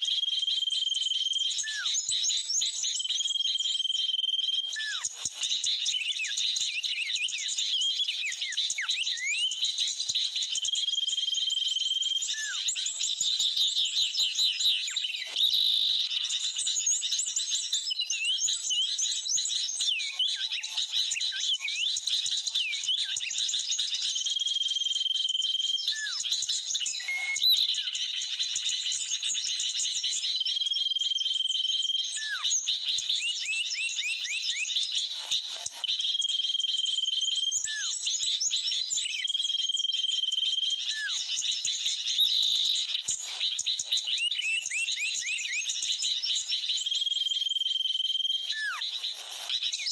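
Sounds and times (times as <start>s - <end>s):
chattering bird calls: 48.3s - 49.9s.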